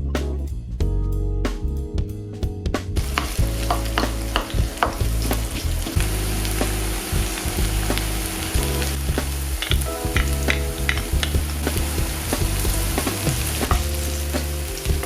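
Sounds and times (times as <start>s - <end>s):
food sizzling in a frying pan: 3.0s - 15.0s.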